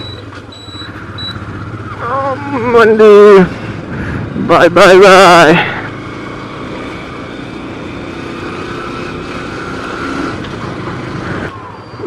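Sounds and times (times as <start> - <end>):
motorcycle engine running: 0.0 - 4.2
road noise: 0.0 - 12.0.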